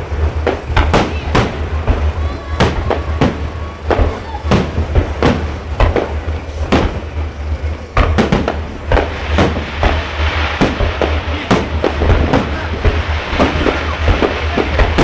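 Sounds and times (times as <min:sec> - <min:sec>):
fireworks bursting bangs: 0:00.0 - 0:15.0.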